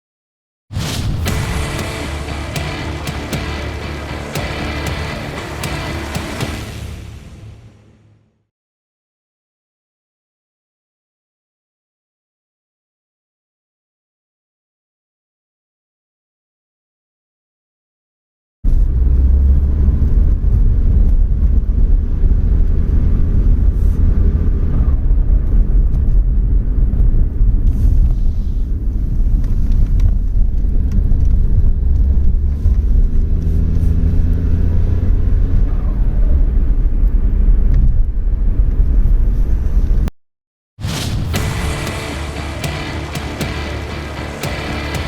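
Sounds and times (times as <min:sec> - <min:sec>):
car engine rumbling: 0:01.3 - 0:08.2, 0:41.3 - 0:45.0.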